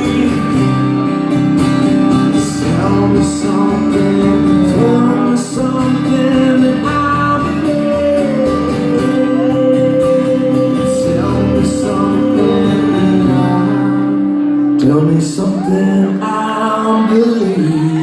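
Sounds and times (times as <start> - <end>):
acoustic guitar strumming: 0.0 - 18.0
person singing long notes: 2.4 - 18.0.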